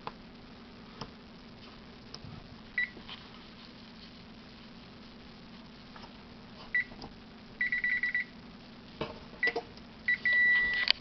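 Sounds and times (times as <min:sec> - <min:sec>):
oven control panel beeping: 0:09.4 - 0:10.9.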